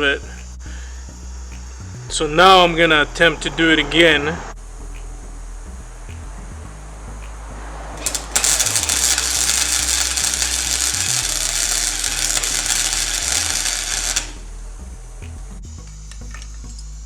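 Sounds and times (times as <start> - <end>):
welding arc crackling and sizzling: 8.0 - 17.0.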